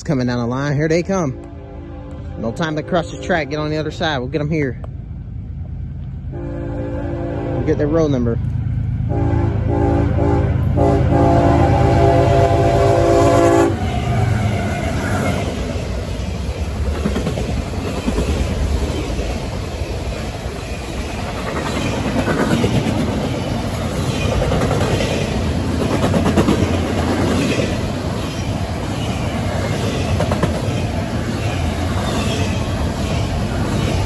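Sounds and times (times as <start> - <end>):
freight train wheels rumbling: 0.0 - 34.0
train clickety-clack: 10.6 - 34.0.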